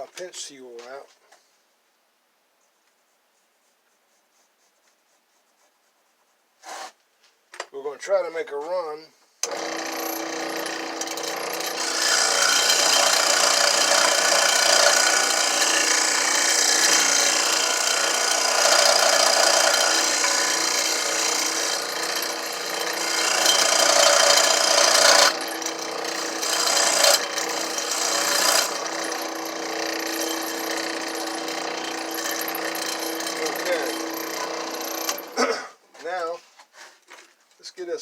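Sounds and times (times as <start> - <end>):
tool scraping wood: 2.6 - 7.0, 9.4 - 37.4.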